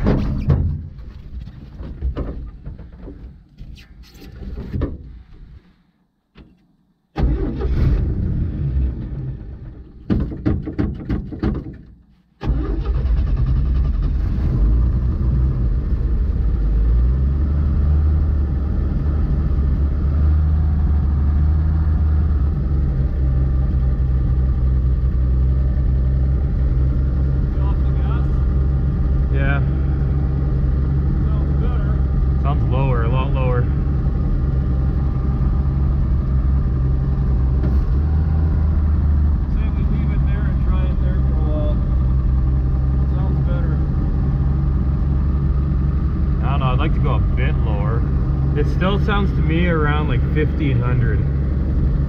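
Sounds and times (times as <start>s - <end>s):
starter cranking engine: 7.2s - 8.3s, 12.4s - 14.8s
truck engine idling: 15.0s - 52.0s.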